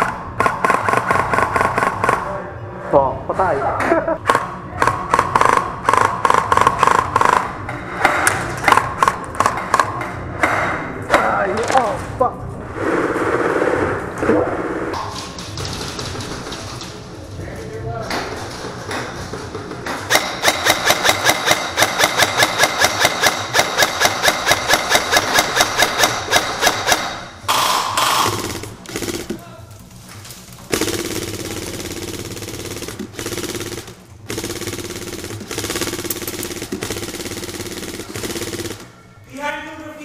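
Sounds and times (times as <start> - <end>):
airsoft gun shots: 20.1 - 29.6.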